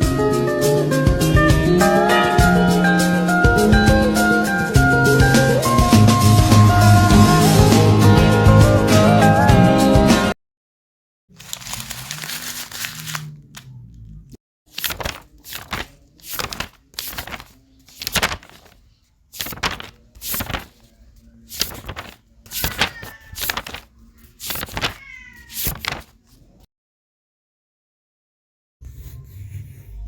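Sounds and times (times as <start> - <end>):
cat meowing: 22.6 - 23.6, 24.6 - 25.8.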